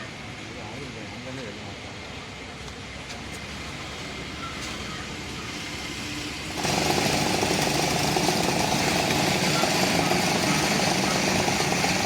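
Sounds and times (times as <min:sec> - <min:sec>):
boat engine running: 0:06.5 - 0:12.0.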